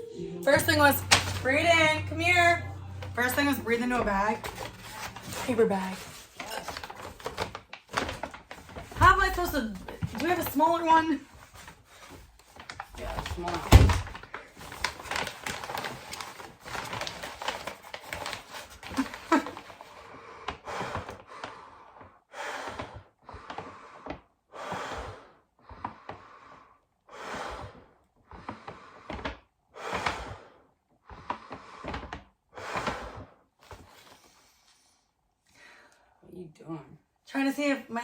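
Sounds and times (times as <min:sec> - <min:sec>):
paper bag rustling: 0:00.5 - 0:20.0.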